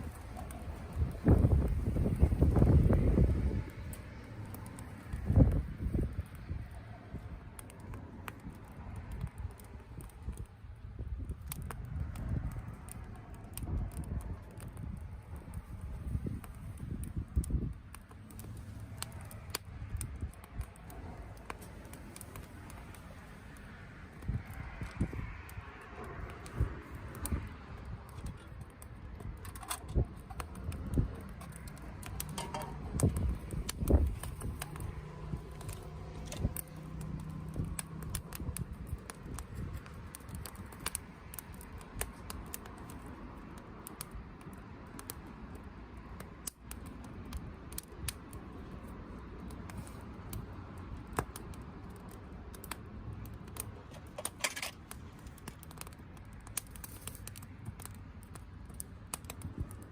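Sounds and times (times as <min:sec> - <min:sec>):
campfire crackling and popping: 0:00.0 - 0:59.9.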